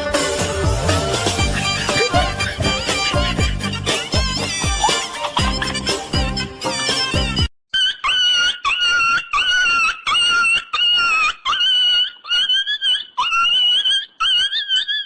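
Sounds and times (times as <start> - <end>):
comedy high-pitched squeaks: 0.8 - 15.0.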